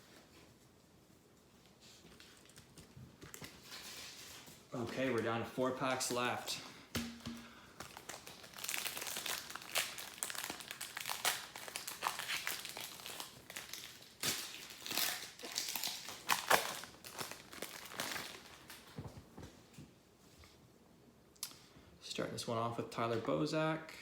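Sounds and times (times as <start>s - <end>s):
wrapper crinkling: 7.8s - 19.0s.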